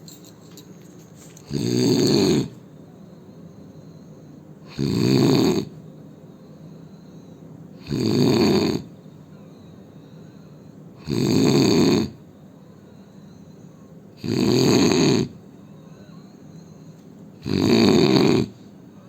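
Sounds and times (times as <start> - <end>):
man snoring loudly: 1.5 - 2.6, 4.7 - 5.8, 7.8 - 8.9, 11.0 - 12.2, 14.2 - 15.4, 17.4 - 18.6.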